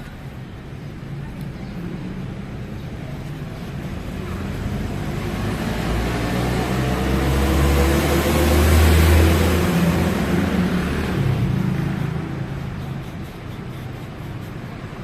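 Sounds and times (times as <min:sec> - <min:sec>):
motorcycle engine revving: 0:04.4 - 0:13.0.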